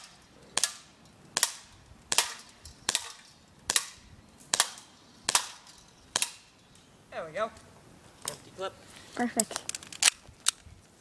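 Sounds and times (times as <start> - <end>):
pistol shots cracking: 0.0 - 6.5.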